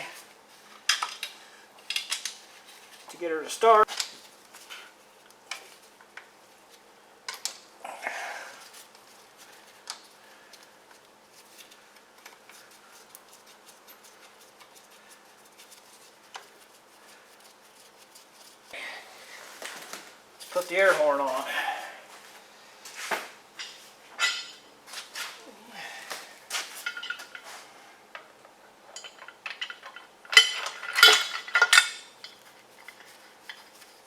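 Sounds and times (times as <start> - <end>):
metal tools clicking and tapping: 0.9 - 2.4, 23.6 - 24.7, 26.8 - 27.4, 28.1 - 33.7
metal parts scraping: 26.6 - 27.6, 28.9 - 34.0.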